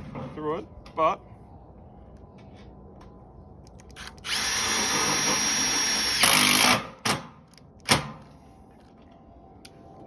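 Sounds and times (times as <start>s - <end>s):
cordless drill whine: 4.0s - 6.7s.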